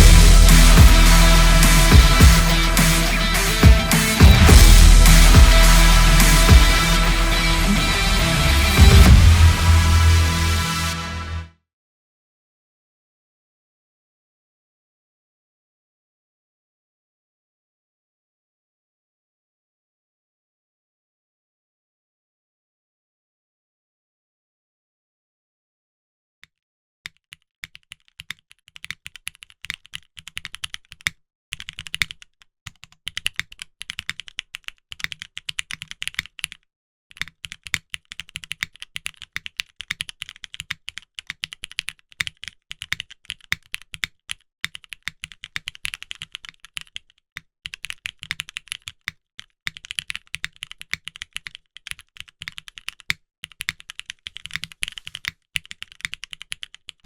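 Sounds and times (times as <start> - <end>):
fast mechanical keyboard typing: 27.1 - 57.0.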